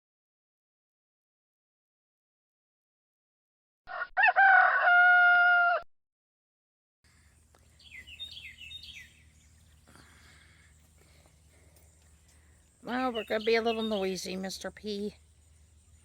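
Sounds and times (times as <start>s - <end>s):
rooster crowing: 3.9s - 5.9s
low steady hum: 7.1s - 16.0s.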